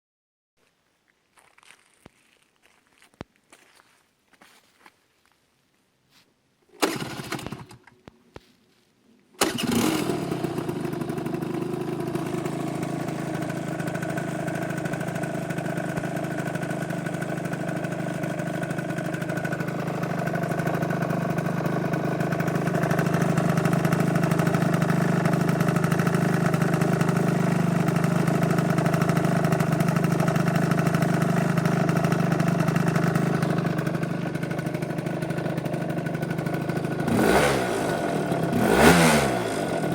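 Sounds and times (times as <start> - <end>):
scooter engine starting and idling: 6.7 - 8.1, 9.4 - 39.9.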